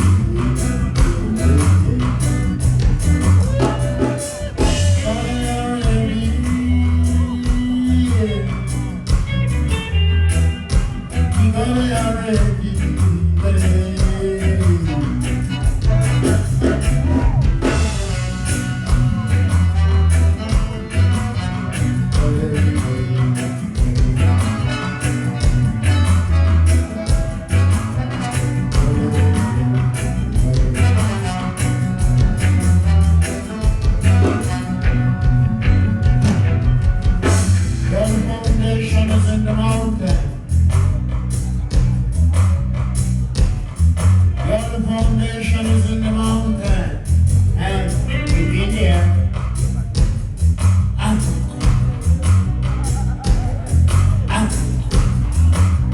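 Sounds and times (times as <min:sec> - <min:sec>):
pulsing bass line: 0:00.0 - 0:55.9
reggae band playing: 0:00.0 - 0:55.9
person singing: 0:03.2 - 0:40.5, 0:50.9 - 0:55.6.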